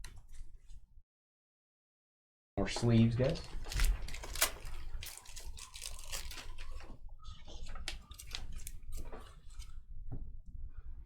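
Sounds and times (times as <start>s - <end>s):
cards rustling in plastic sleeves: 3.3s - 9.7s.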